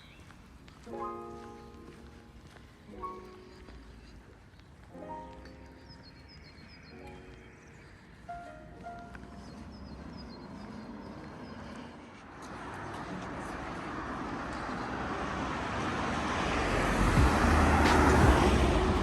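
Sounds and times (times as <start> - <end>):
car engine passing: 9.2 - 19.0
tyres hissing on wet road: 12.6 - 19.0.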